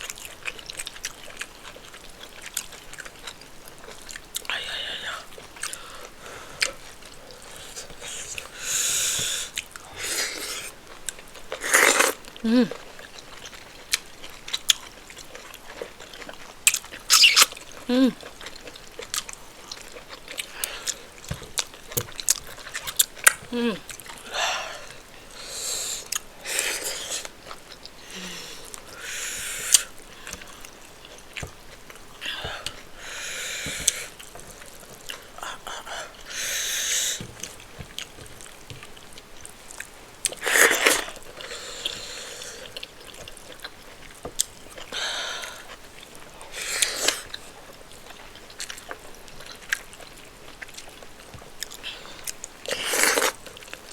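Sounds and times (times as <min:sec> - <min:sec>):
person chewing food: 0:00.0 - 0:53.9
hiss-like noise: 0:07.6 - 0:10.7, 0:28.2 - 0:30.0.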